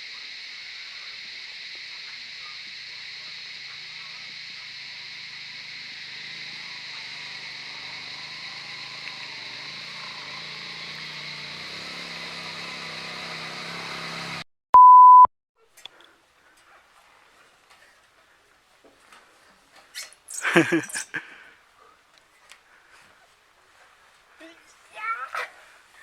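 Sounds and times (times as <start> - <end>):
loud electronic beep: 14.8 - 15.3
steady high hiss: 20.3 - 21.5.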